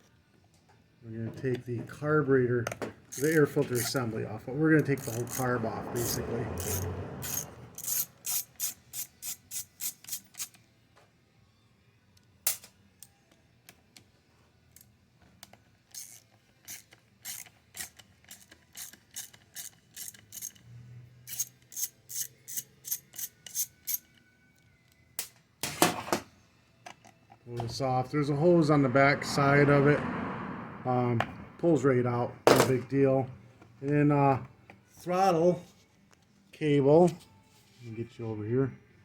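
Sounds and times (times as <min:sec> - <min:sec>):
hand ratchet clicking: 0:03.1 - 0:04.0, 0:04.8 - 0:10.6, 0:15.9 - 0:20.6, 0:21.2 - 0:24.1.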